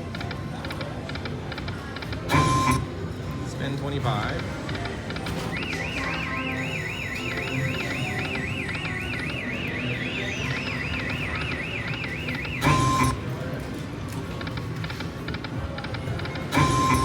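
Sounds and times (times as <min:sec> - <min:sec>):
murmur of voices: 0:00.0 - 0:17.0
slot machine warbling tone: 0:05.2 - 0:13.4, 0:16.5 - 0:17.0
short electronic beep: 0:05.4 - 0:13.3, 0:16.6 - 0:17.0.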